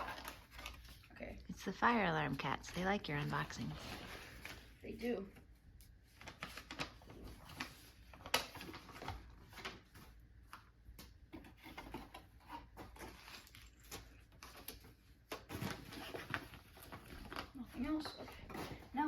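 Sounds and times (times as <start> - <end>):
rummaging in cardboard box: 11.3 - 19.0.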